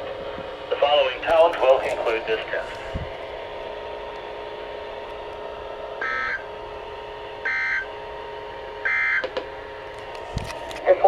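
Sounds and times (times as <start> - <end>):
shrill digital data tones: 6.0 - 6.4.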